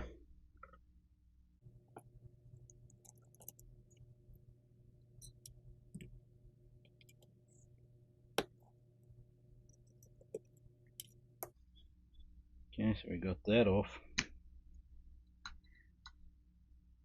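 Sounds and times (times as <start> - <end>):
steady low hum: 1.4 - 17.0
metal parts clicking and tapping: 2.6 - 3.7, 5.2 - 6.1, 9.6 - 11.2.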